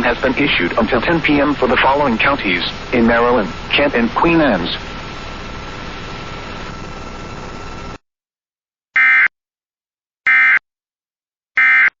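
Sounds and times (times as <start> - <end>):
radio static hiss: 0.0 - 8.0.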